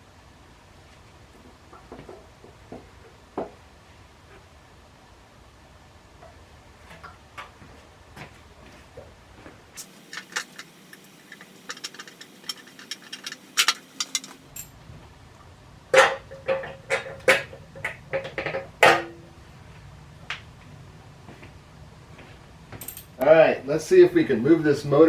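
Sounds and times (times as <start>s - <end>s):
metal tools clanking: 9.8s - 14.6s.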